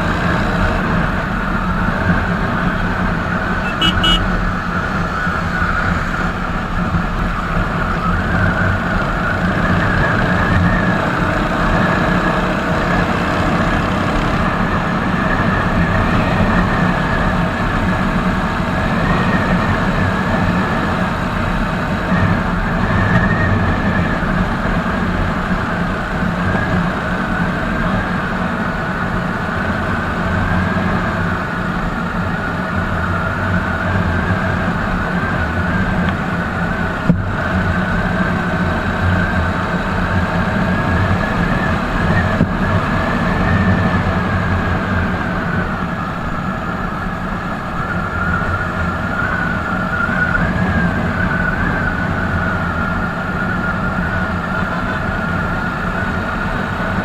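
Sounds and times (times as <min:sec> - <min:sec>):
motorcycle engine cruising: 0:00.0 - 0:57.0
road and wind noise: 0:00.0 - 0:57.0.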